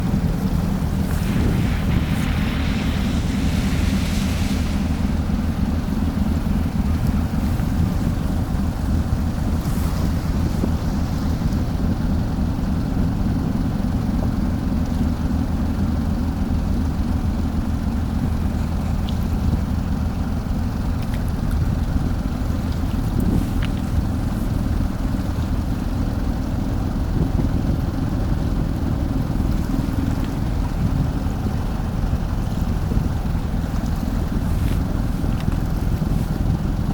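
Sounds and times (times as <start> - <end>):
ferry engines droning: 0.0 - 36.9
wind buffeting microphone: 0.0 - 36.9.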